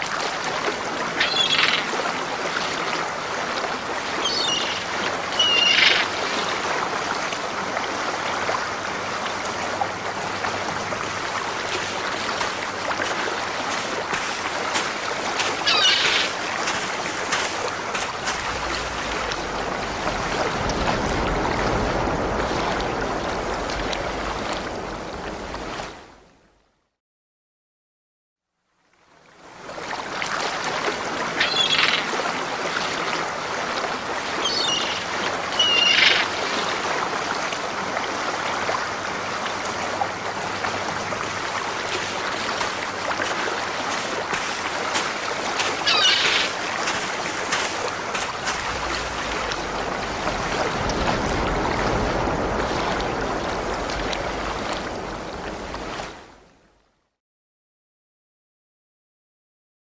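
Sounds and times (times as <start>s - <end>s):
sea waves washing on beach: 0.0s - 26.3s, 29.4s - 56.7s
seagulls calling: 1.2s - 2.0s, 4.1s - 6.5s, 15.6s - 16.6s, 18.0s - 24.9s, 34.3s - 36.4s, 45.8s - 46.7s, 48.2s - 55.9s.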